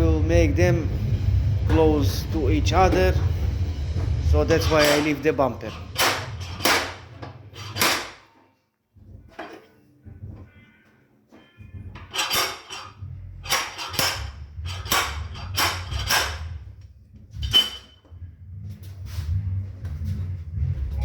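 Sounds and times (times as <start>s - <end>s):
metal tool striking sheet steel: 4.2s - 8.3s, 12.0s - 16.6s.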